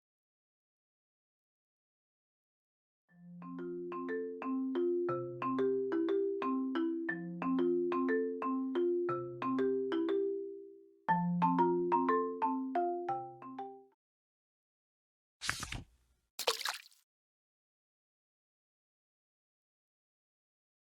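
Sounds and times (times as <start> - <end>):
marimba-like mallet percussion music: 3.1 - 14.0.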